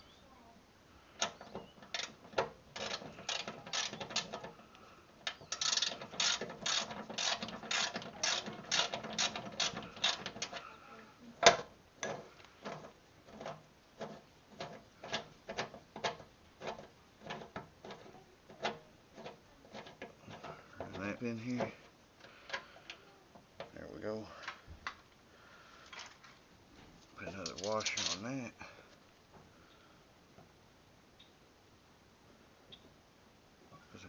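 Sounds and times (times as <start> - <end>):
ratchet wrench clicking: 1.9 - 2.2, 2.8 - 4.4, 5.2 - 10.5.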